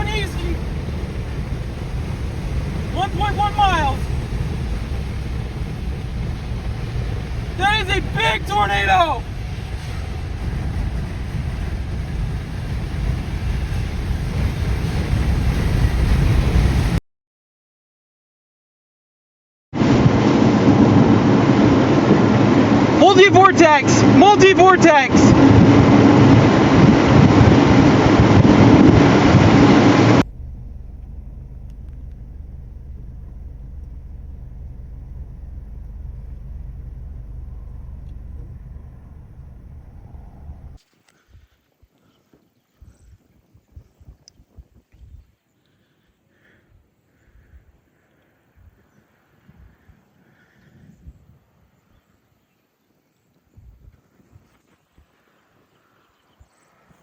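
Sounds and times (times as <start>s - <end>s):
moving car rumble: 0.0s - 16.9s, 29.4s - 40.8s
loud rushing noise: 0.0s - 17.0s, 29.7s - 40.8s
wind rumble: 0.0s - 17.0s, 25.2s - 40.8s.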